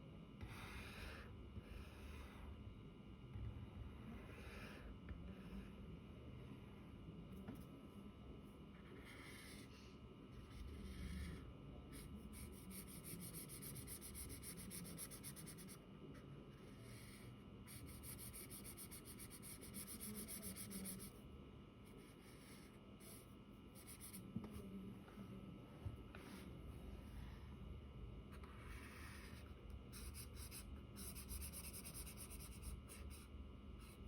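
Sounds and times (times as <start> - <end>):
pen scratching on paper: 0.4 - 2.5, 8.8 - 15.8, 16.5 - 21.1, 22.0 - 24.6, 28.3 - 34.0.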